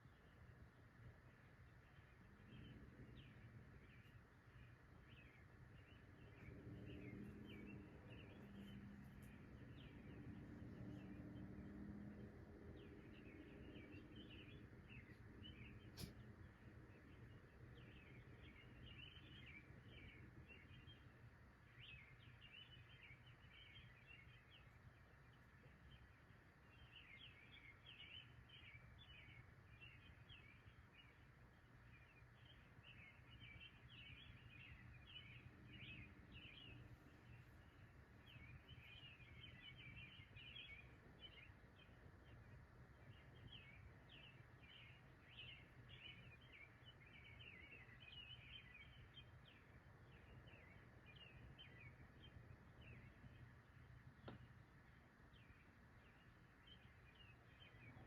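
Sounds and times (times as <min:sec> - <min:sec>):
faint bird chirps: 0:00.0 - 0:58.0
low steady rumble: 0:00.0 - 0:58.0.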